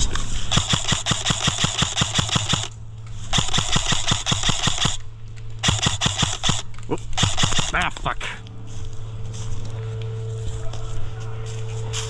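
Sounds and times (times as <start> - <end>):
airsoft gun firing bursts: 0.4 - 7.9.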